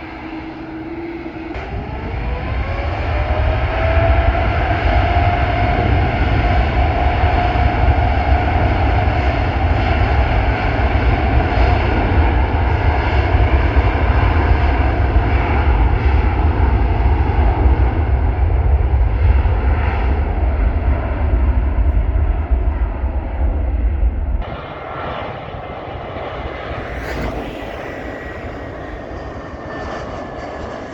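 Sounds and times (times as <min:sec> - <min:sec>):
jet engine whine: 0:00.0 - 0:30.9
jet engines rumbling: 0:00.0 - 0:30.9.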